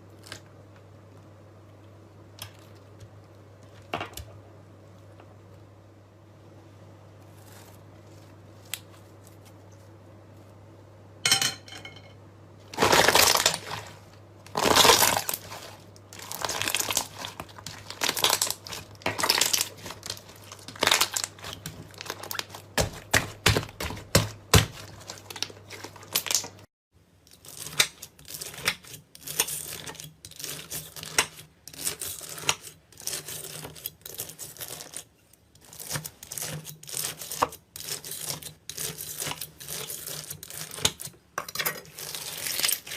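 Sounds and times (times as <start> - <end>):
slime crackling and popping: 12.7 - 26.7, 41.9 - 42.9.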